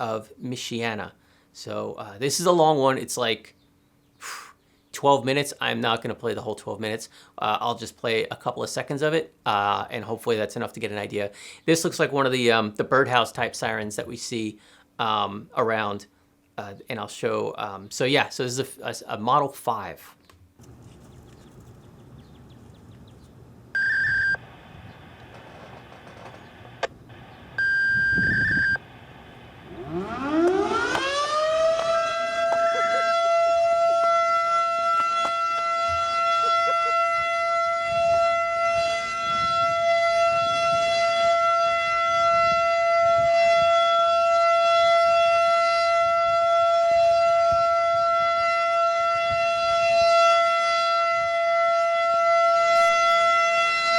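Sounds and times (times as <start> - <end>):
siren wailing: 23.7 - 53.9.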